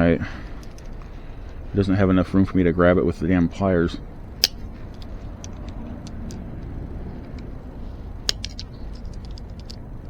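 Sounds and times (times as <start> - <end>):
steady low hum: 0.0 - 10.0
pliers clicking on metal: 4.4 - 7.5, 8.2 - 9.9.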